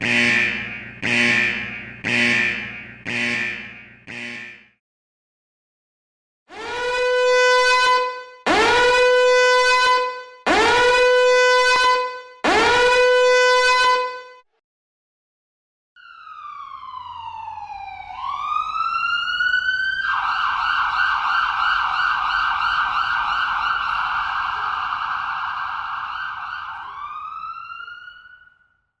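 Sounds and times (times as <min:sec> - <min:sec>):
electronic siren blasts: 0:00.0 - 0:04.8, 0:06.5 - 0:14.4, 0:16.0 - 0:28.7
siren yelp warble: 0:06.6 - 0:14.2, 0:16.0 - 0:28.7.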